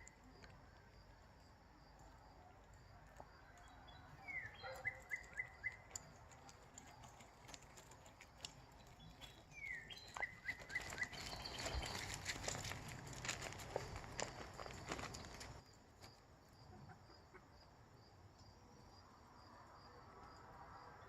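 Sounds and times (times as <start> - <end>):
light ticks and rustles: 0.0 - 16.2
bird calling: 4.2 - 6.0, 9.2 - 12.1.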